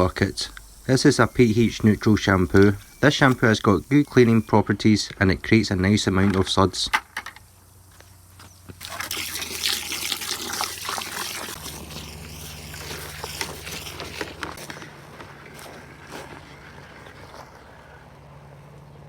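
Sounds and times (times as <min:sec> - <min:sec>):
water pouring into bucket: 0:00.0 - 0:04.5, 0:08.8 - 0:14.7.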